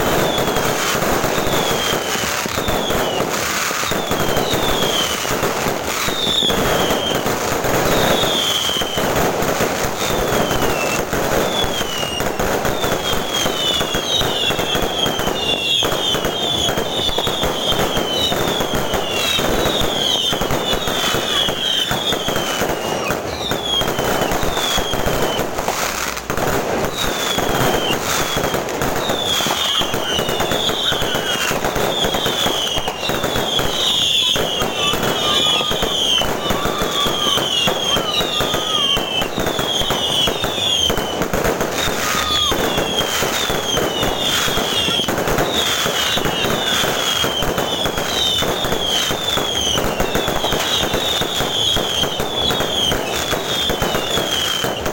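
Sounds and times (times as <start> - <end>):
falling firework whistles: 0.0 - 54.9
fireworks crackling: 0.0 - 54.9.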